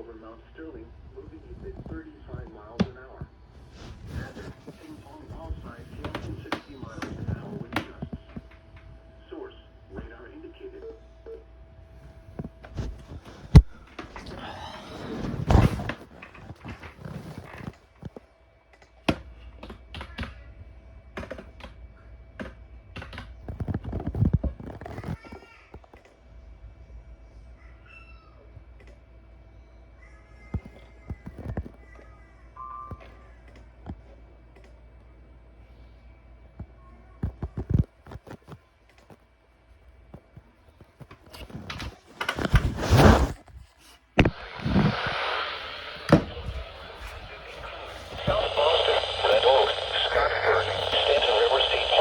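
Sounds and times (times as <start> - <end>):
faint steady hum: 0.0 - 52.0
steady static hiss: 44.2 - 52.0.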